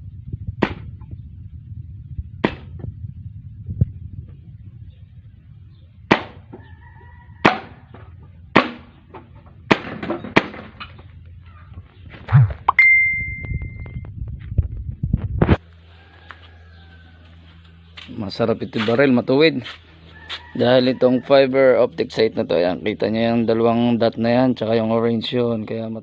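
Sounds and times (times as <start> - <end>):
airsoft pistol shots: 6.1 - 6.4, 7.4 - 7.8
metallic ding: 12.7 - 13.9.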